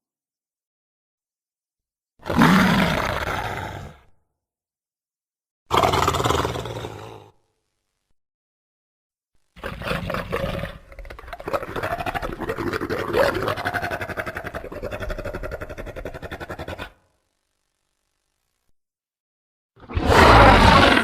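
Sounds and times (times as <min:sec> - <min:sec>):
creature roaring call: 0:02.2 - 0:04.1, 0:05.7 - 0:07.4, 0:09.6 - 0:17.0, 0:19.8 - 0:21.0
rattling growl: 0:09.6 - 0:17.0.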